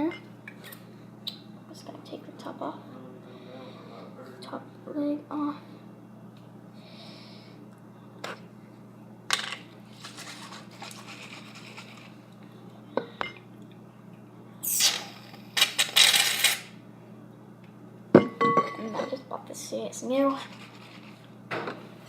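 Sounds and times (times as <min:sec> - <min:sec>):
aerosol can hissing spurts: 0:14.6 - 0:15.0.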